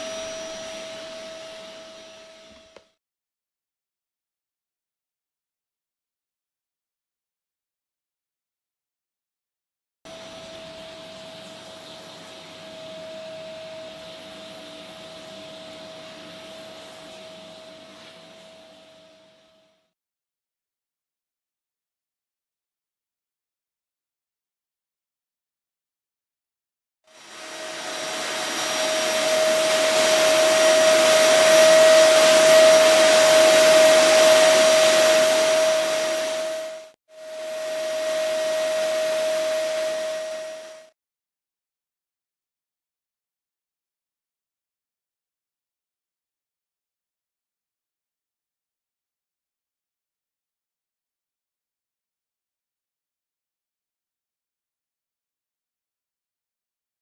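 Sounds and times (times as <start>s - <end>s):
vacuum cleaner running: 0.0s - 3.0s, 10.1s - 19.9s, 27.1s - 41.0s.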